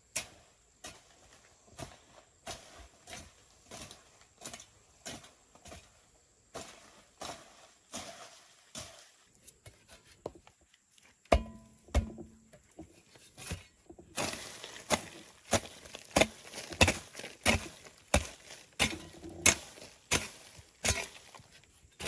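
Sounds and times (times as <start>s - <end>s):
footsteps: 12.0s - 22.0s.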